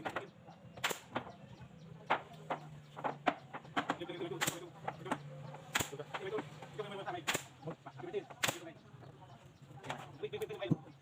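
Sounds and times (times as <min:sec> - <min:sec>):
sharp knocks and clicks: 0:00.0 - 0:06.7
voices: 0:00.0 - 0:11.0.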